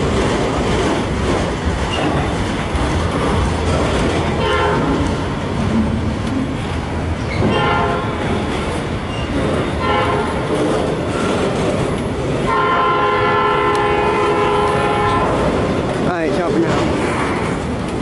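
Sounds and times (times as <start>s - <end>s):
rumble of passing train: 0.0s - 18.0s
train horn blasts: 4.4s - 5.0s, 7.5s - 8.2s, 9.8s - 10.4s, 12.5s - 15.4s.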